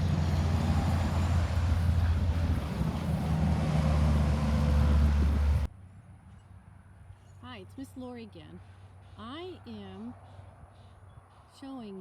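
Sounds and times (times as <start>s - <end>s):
wind buffeting microphone: 0.0s - 5.7s.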